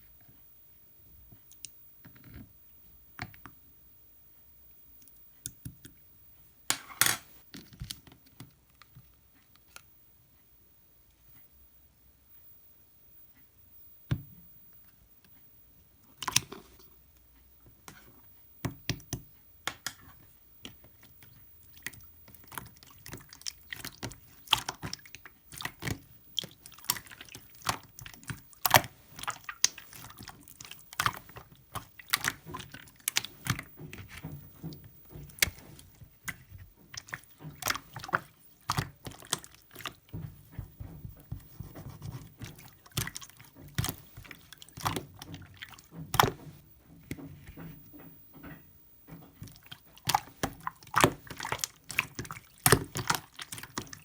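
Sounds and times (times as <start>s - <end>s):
wet clicks and crackles: 1.4s - 2.4s, 16.0s - 16.9s, 18.8s - 54.0s.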